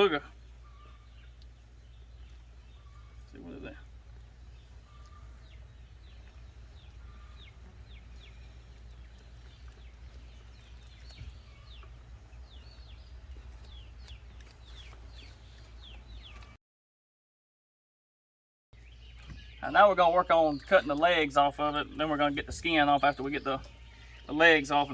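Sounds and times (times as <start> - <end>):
low steady rumble: 0.0 - 16.5
birds chirping: 0.0 - 16.6, 18.8 - 24.9.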